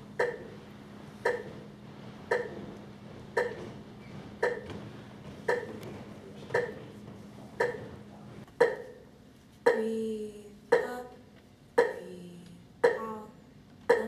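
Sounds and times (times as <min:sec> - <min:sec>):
faint steady hum: 0:00.0 - 0:14.0
metronome clicks: 0:00.2 - 0:00.5, 0:01.2 - 0:01.5, 0:11.8 - 0:12.0, 0:12.8 - 0:13.1.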